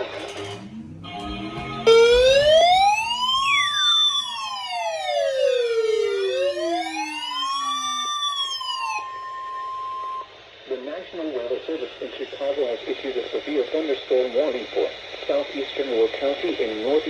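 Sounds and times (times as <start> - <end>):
tone gliding downward: 0.2 - 10.2
siren wailing: 0.2 - 10.3
steady alert tone: 0.3 - 8.4.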